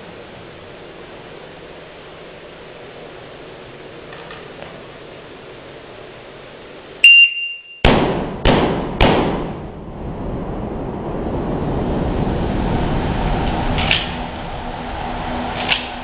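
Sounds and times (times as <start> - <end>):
shotgun shots: 7.9 - 9.6
steady rushing noise: 8.1 - 16.0.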